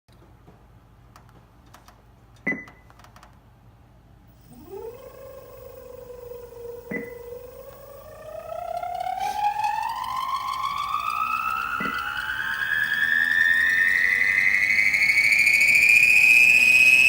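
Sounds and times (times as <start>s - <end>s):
treadmill motor whine: 4.3s - 17.0s.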